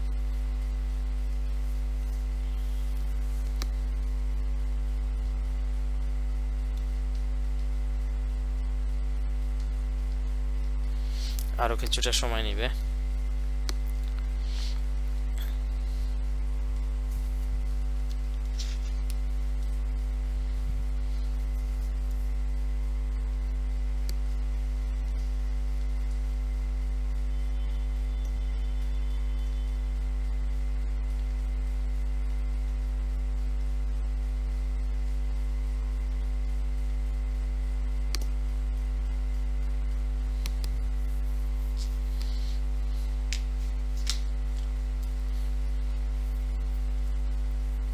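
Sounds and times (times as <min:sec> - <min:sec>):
electrical mains hum: 0:00.0 - 0:47.9
faint clicks: 0:38.1 - 0:38.4.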